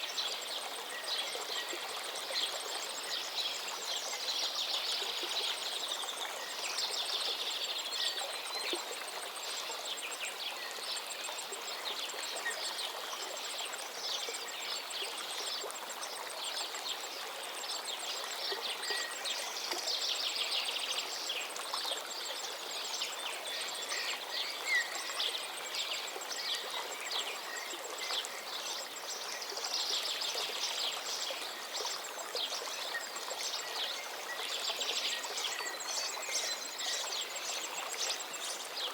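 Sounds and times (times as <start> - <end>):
river water flowing: 0.0 - 38.9.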